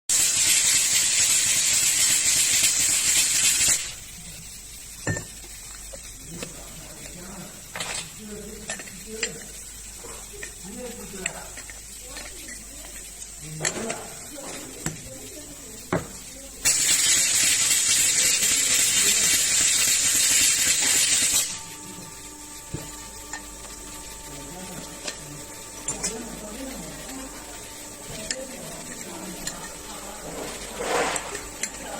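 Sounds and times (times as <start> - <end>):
loud high-pitched hiss: 0.1 - 11.6, 15.6 - 31.9
factory hum: 16.3 - 31.9.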